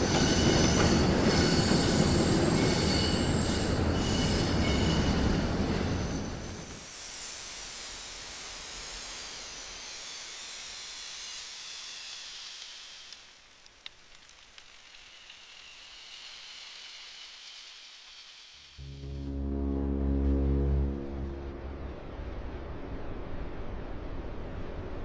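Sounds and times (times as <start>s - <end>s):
steady hiss: 6.7s - 19.0s.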